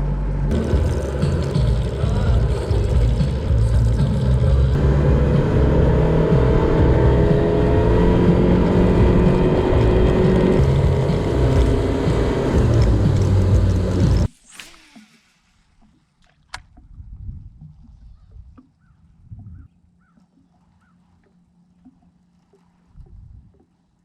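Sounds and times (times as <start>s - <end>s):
outboard motor running: 0.0s - 14.3s.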